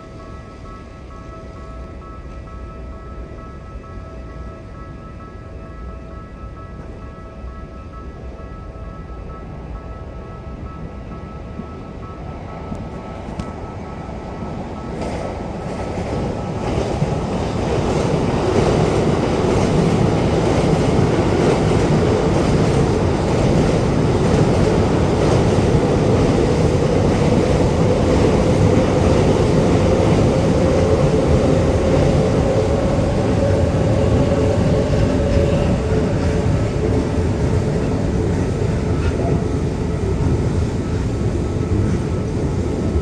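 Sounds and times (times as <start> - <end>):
train wheels rumbling on rail: 8.0 - 43.0
train whine rising in pitch: 19.5 - 43.0.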